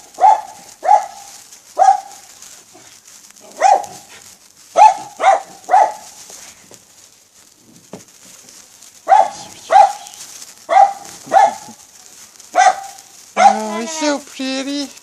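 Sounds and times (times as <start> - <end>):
dog barking: 0.0 - 2.2, 3.4 - 4.1, 4.7 - 6.1, 9.0 - 11.8, 12.5 - 13.8.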